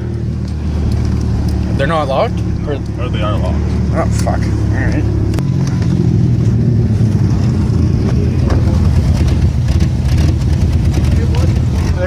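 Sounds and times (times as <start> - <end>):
pickup engine running: 0.0 - 12.0.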